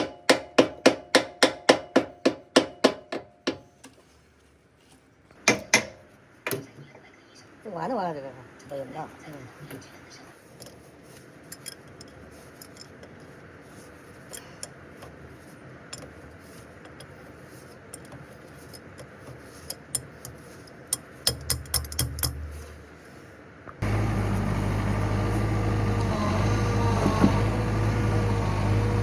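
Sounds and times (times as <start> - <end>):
tools clicking and knocking: 11.5 - 13.2, 14.2 - 15.2, 17.9 - 22.6
machine engine running: 23.8 - 29.0.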